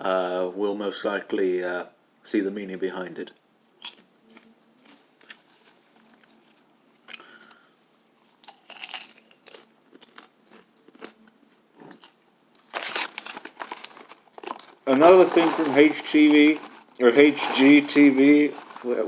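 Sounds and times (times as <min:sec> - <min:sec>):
person chewing crunchy snack: 0:08.2 - 0:19.0.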